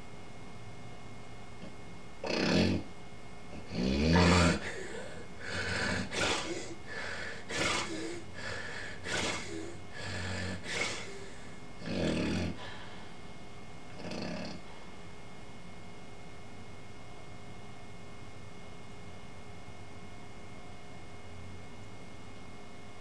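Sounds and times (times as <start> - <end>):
person snoring: 2.2 - 2.9, 3.6 - 12.9, 14.0 - 14.7.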